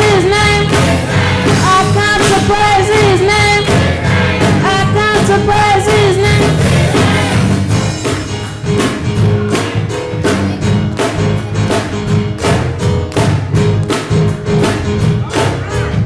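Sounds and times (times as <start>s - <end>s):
bass: 0.0s - 16.0s
driving drum beat: 0.0s - 16.0s
guitar: 0.0s - 16.0s.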